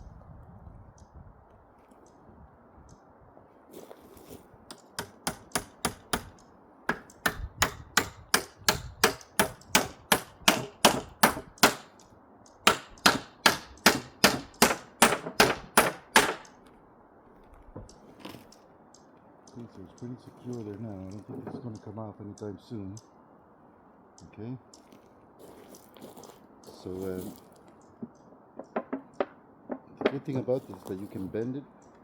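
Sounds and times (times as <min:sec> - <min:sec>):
hammer driving nail into wood: 0:04.7 - 0:12.0, 0:12.6 - 0:16.6.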